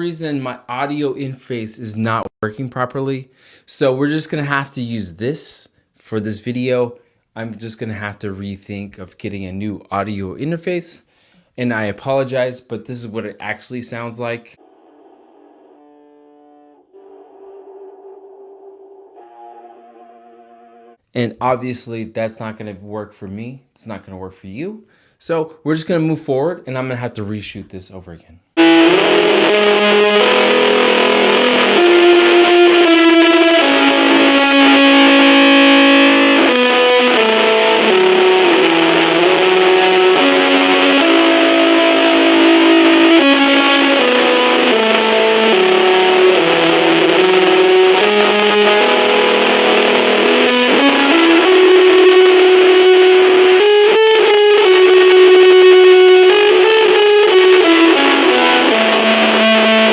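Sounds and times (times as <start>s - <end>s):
distorted electric guitar melody: 28.6s - 59.9s.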